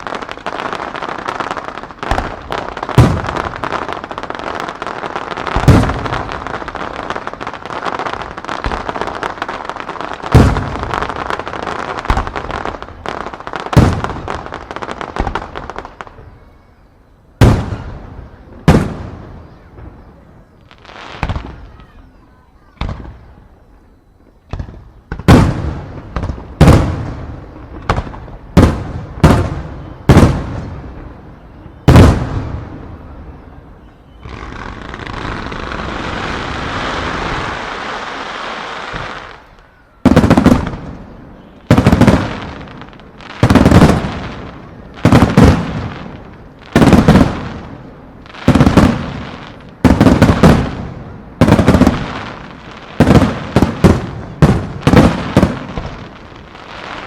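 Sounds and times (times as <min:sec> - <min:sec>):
firework hissing crackle: 0:00.0 - 0:23.5, 0:24.4 - 0:57.0
firework shells booming: 0:01.9 - 0:04.2, 0:05.4 - 0:09.2, 0:10.2 - 0:11.1, 0:13.7 - 0:16.3, 0:24.5 - 0:33.4, 0:38.8 - 0:56.3.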